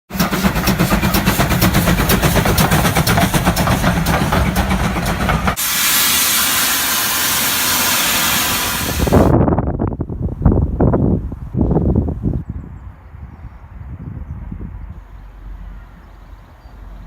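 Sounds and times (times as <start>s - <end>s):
train running past: 0.1s - 9.3s
train wheels clicking: 0.1s - 9.3s
steady hiss: 5.6s - 9.3s.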